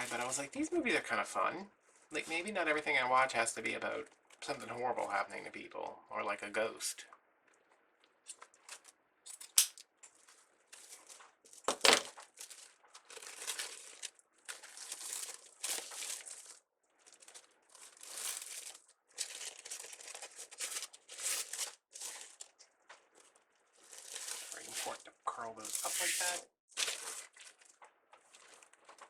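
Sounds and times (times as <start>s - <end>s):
plastic mesh rustling and crinkling: 7.5s - 9.0s, 10.0s - 29.0s
loud plastic crackle: 10.2s - 25.0s, 25.6s - 29.0s.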